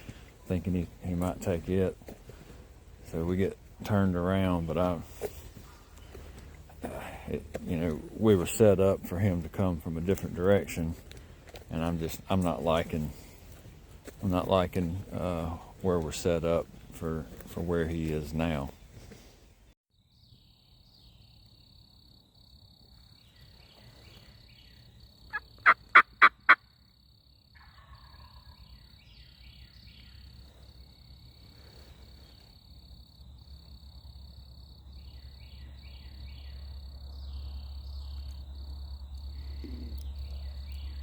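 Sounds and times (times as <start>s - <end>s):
wild turkey gobbling: 25.3s - 26.6s, 27.6s - 28.6s.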